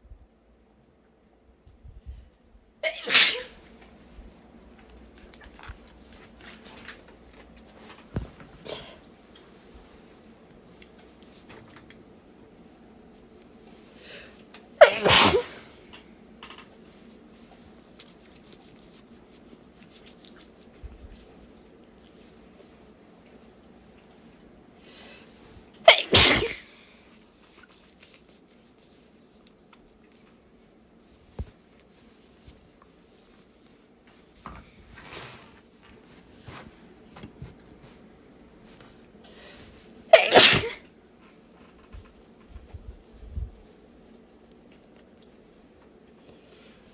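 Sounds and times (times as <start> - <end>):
woman sneezing: 2.8 - 3.6, 14.8 - 15.8, 25.9 - 26.7, 40.1 - 40.8.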